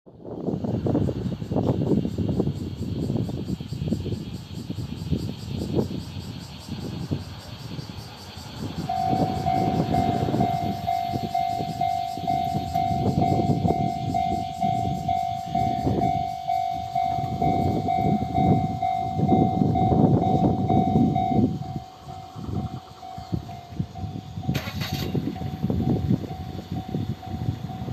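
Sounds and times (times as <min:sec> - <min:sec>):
train wheels rumbling on rails: 0:00.2 - 0:27.9
level-crossing warning bell: 0:08.6 - 0:27.9.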